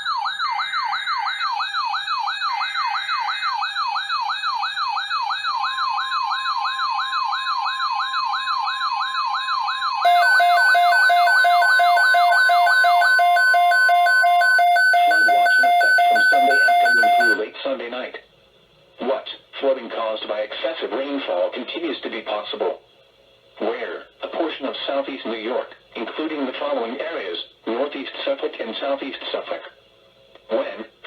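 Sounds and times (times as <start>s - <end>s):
pulsing two-tone alarm: 10.0s - 17.4s
siren falling sweep: 10.1s - 17.4s
steady electronic tone: 10.1s - 17.4s.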